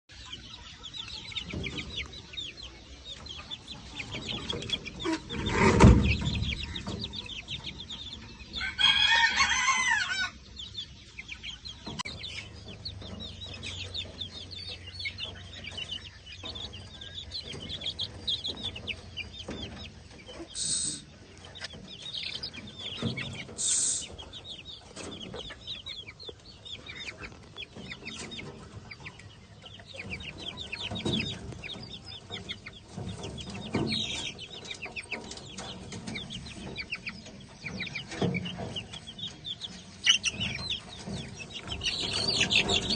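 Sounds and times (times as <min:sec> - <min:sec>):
chickens clucking: 0:00.1 - 0:42.9
rooster crowing: 0:08.6 - 0:10.4.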